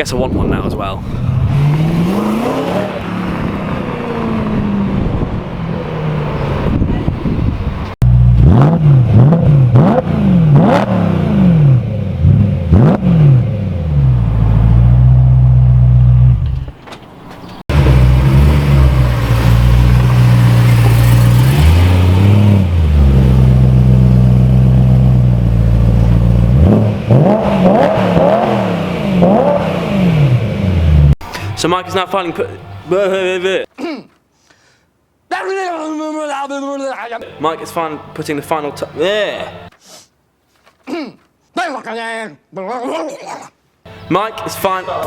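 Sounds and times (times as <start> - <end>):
car engine revving: 1.1 - 16.7, 17.7 - 31.2.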